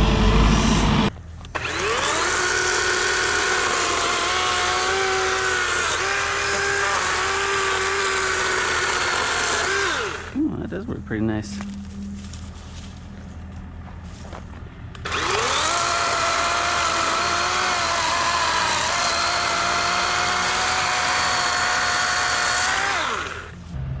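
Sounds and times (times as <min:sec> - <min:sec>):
electric chainsaw motor whining: 0:00.0 - 0:10.4, 0:15.0 - 0:23.6.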